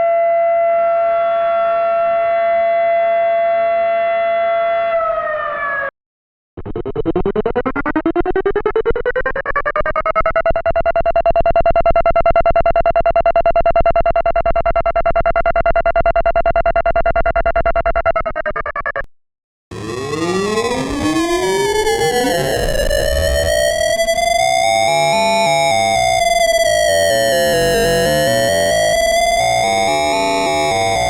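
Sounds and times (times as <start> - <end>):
overlapping sirens: 0.4 - 5.9, 19.7 - 31.0
tornado siren winding up: 19.7 - 31.0.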